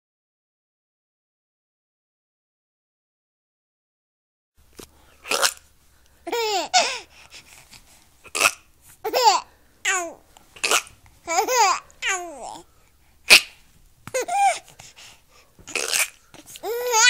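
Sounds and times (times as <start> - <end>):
sharp breathy noises: 4.8 - 16.9
baby laughing: 5.2 - 5.6, 6.2 - 7.1, 8.3 - 12.6, 13.3 - 14.8, 15.7 - 17.0.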